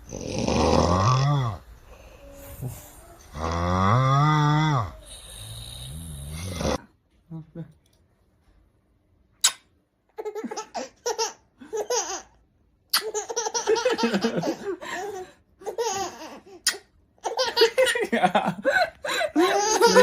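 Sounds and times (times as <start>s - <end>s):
baby laughing: 10.2s - 20.0s.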